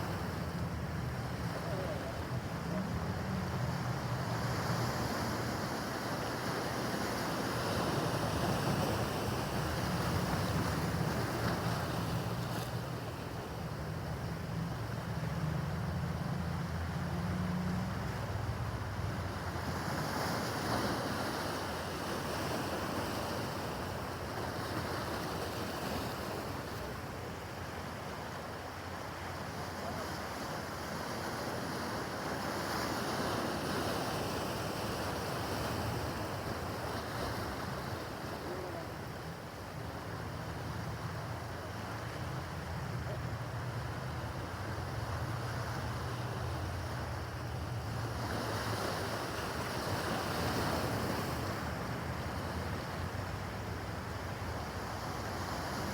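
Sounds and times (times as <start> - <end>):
waves washing and breaking: 0.0 - 55.9.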